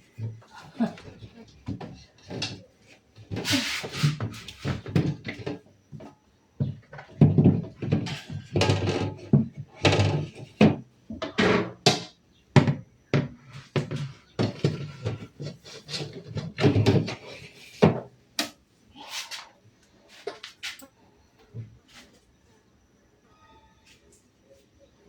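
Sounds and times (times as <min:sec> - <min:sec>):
household items knocking and clattering: 0:00.2 - 0:18.1.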